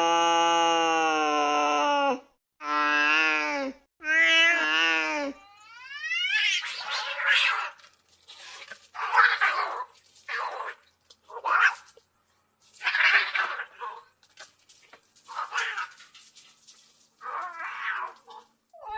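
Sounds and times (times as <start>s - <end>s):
cat yowling: 17.2s - 18.9s.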